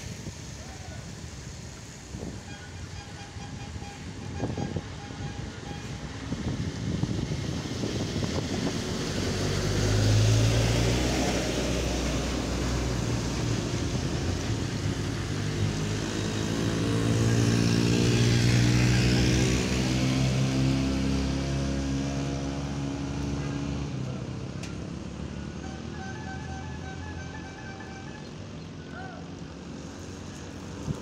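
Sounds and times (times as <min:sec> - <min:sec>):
bus engine passing by: 0:00.0 - 0:31.0.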